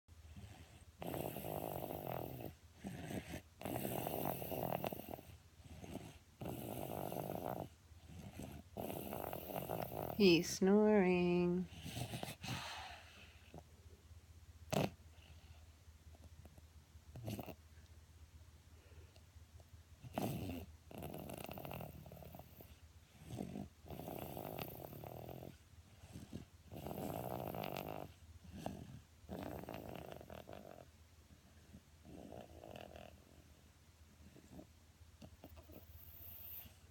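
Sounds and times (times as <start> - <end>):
rasping snore: 0.3 - 10.3, 14.7 - 15.5, 17.1 - 17.6, 20.0 - 30.9, 32.0 - 33.4, 34.2 - 36.8
person snoring: 5.8 - 11.6.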